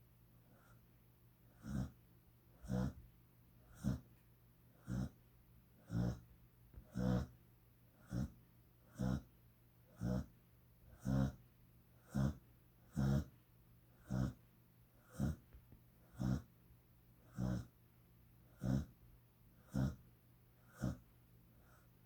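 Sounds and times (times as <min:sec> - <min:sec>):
dog snoring: 0:00.5 - 0:00.8, 0:01.5 - 0:02.0, 0:02.6 - 0:03.0, 0:03.6 - 0:05.2, 0:05.8 - 0:11.4, 0:12.0 - 0:14.4, 0:15.0 - 0:16.5, 0:17.2 - 0:17.8, 0:18.5 - 0:19.0, 0:19.6 - 0:21.9.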